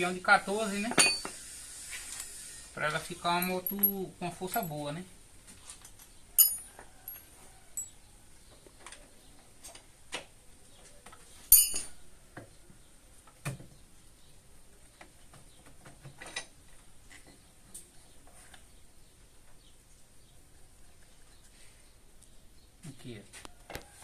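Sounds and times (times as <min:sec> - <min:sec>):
metal tools clinking: 0:00.9 - 0:01.3, 0:03.3 - 0:04.8, 0:05.8 - 0:08.0, 0:11.5 - 0:12.0.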